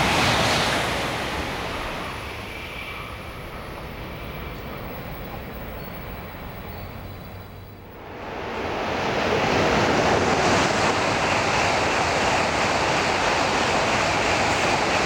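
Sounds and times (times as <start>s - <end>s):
high-speed train passing: 0.0s - 15.0s.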